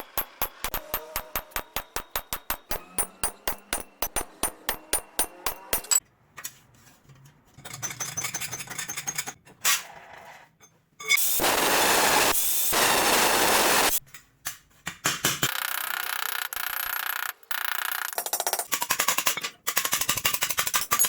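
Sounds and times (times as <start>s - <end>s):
hammer striking metal: 0.0s - 6.0s.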